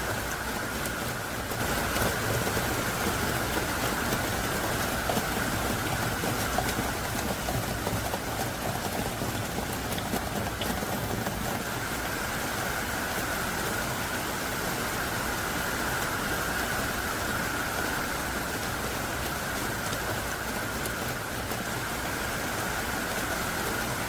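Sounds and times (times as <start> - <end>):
heavy rain pouring: 0.0 - 24.0.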